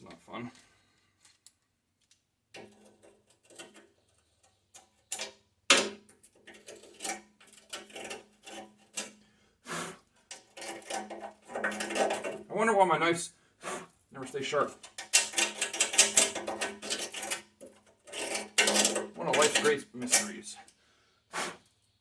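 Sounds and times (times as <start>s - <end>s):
hand tools clicking and clinking: 4.7s - 9.2s, 10.2s - 12.5s, 14.5s - 20.8s.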